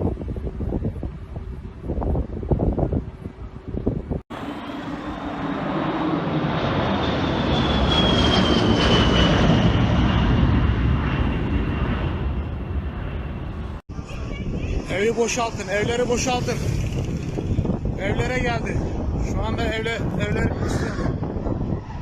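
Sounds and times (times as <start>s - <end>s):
aircraft engine passing overhead: 0.0s - 22.0s.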